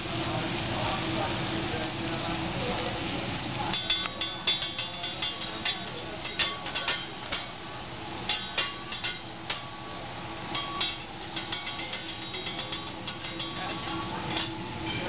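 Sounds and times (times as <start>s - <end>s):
steady background noise: 0.0s - 15.0s
metal spatula clanking on griddle: 3.7s - 15.0s.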